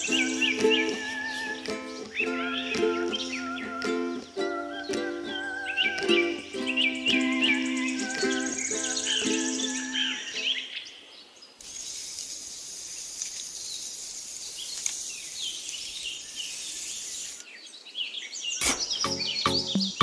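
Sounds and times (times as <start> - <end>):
insects: 0.0 - 2.1, 11.6 - 17.6
steady hiss: 0.0 - 2.2, 11.6 - 17.5
birds chirping: 0.0 - 3.4, 5.3 - 12.0, 13.5 - 20.0
ukulele music: 0.0 - 10.6, 19.0 - 20.0.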